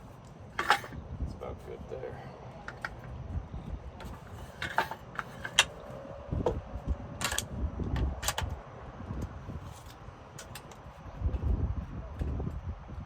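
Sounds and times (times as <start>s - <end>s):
steady low rumble: 0.0s - 13.0s
tools clicking and knocking: 0.6s - 1.0s, 2.6s - 3.2s, 4.0s - 5.8s, 7.2s - 8.5s, 9.8s - 10.8s.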